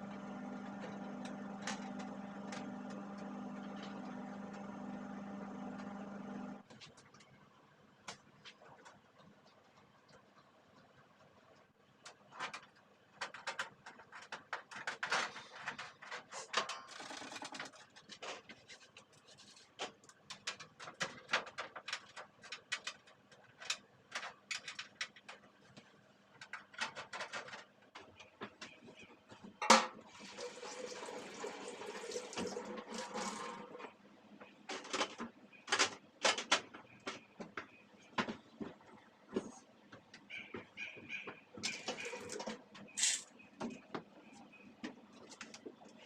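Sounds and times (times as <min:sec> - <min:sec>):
small clicks and clatters: 0:08.0 - 0:29.6
tap water running into sink: 0:30.1 - 0:33.8.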